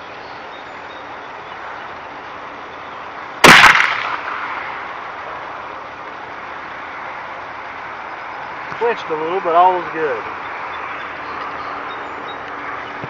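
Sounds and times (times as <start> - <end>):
shotgun shot: 3.4 - 4.7.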